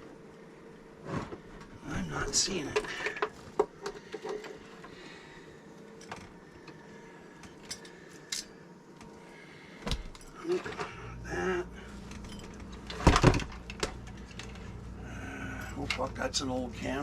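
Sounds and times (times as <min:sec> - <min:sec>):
rummaging through cables and parts: 0:01.0 - 0:05.0, 0:09.8 - 0:11.2, 0:11.9 - 0:15.0, 0:15.6 - 0:16.8.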